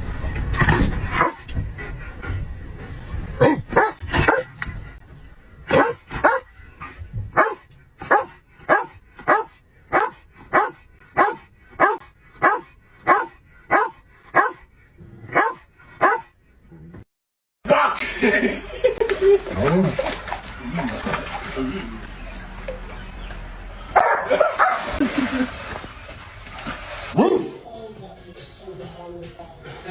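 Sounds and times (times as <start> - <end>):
dog barking: 1.2 - 1.4, 3.4 - 4.5, 5.7 - 6.4, 7.4 - 14.6, 15.3 - 16.3, 24.0 - 24.9, 27.2 - 27.6.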